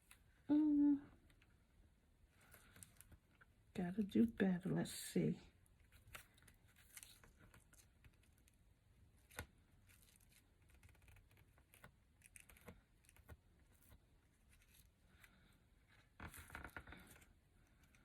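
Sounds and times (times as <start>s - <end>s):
ribbon and paper rustling: 5.9s - 8.6s.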